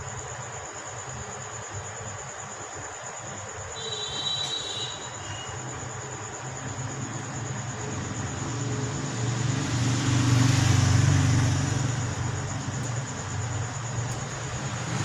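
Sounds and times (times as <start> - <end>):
vehicle passing: 6.9 - 15.0.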